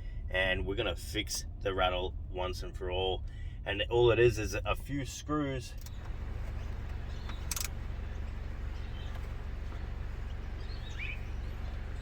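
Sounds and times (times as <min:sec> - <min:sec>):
steady low rumble: 0:05.9 - 0:12.0
faint bird chirps: 0:06.0 - 0:12.0.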